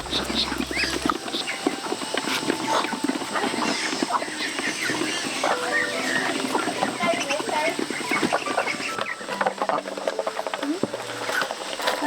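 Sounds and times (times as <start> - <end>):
low hum: 0.0 - 3.6
poultry chirps and clicks: 0.0 - 12.0.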